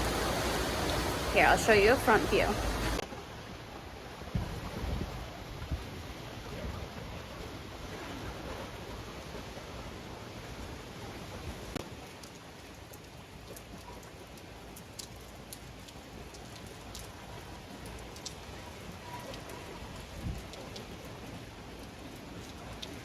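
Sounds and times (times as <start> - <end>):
heavy rain falling: 0.0 - 3.0.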